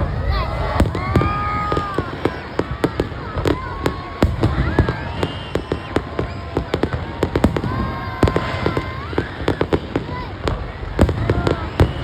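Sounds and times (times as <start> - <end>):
fireworks bangs and crackling: 0.0 - 12.0.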